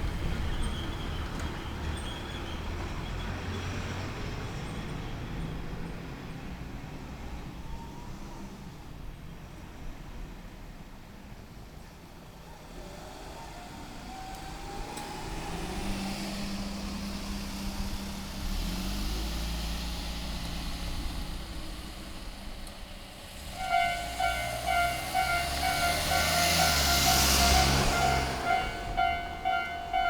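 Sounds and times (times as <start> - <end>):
vehicle noise: 0.0 - 30.0
level crossing alarm ringing: 23.5 - 30.0.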